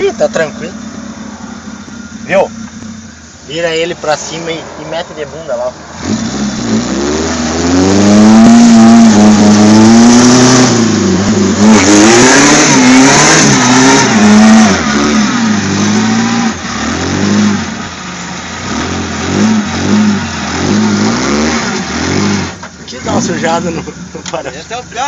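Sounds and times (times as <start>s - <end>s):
engine revving: 0.0s - 24.0s
rushing noise: 3.0s - 22.6s.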